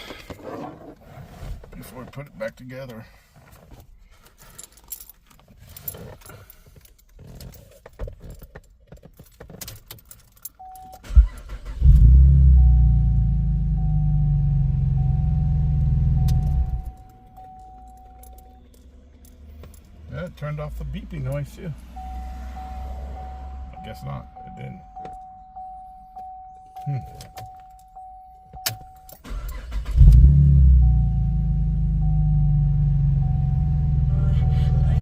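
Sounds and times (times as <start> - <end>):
keys jangling in ignition: 3.8 - 12.1, 16.2 - 21.5, 26.6 - 30.4
car engine cranking and running: 4.3 - 25.3, 26.8 - 35.0
car warning chime beeping: 10.5 - 35.0.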